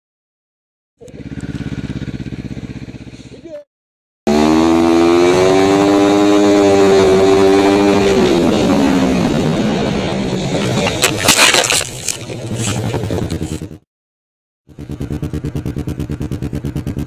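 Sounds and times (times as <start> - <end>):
snowmobile engine revving: 4.3 - 11.4, 12.2 - 13.8.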